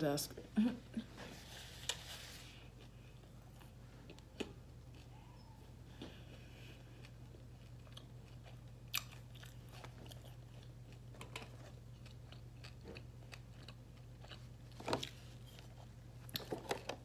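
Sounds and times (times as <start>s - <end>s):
low steady hum: 0.0s - 17.0s
chewing with wet mouth clicks: 6.3s - 15.2s.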